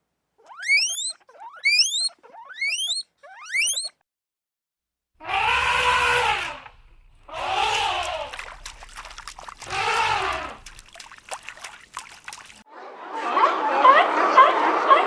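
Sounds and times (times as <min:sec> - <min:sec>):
farm animal bleating: 0:09.6 - 0:10.8.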